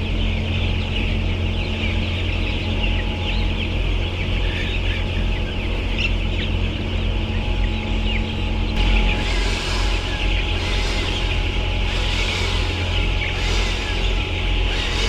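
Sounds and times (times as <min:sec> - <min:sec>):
low hum: 0:08.7 - 0:15.0.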